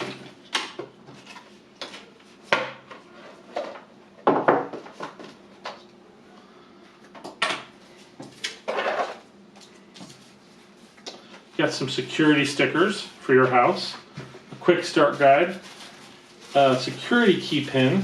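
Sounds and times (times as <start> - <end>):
packaging rustling: 14.8 - 18.0.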